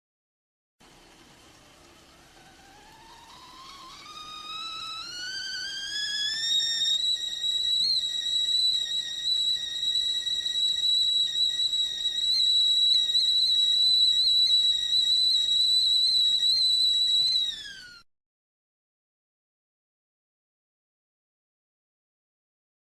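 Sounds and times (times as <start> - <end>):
whistling kettle: 0.8 - 18.1.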